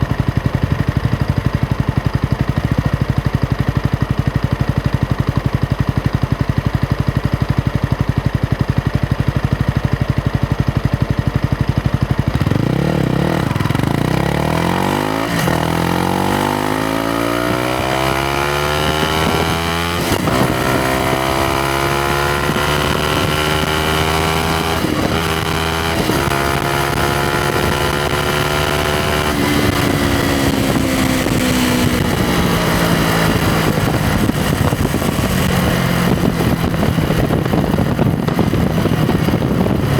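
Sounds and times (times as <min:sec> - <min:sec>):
motorcycle engine: 0:00.0 - 0:39.9.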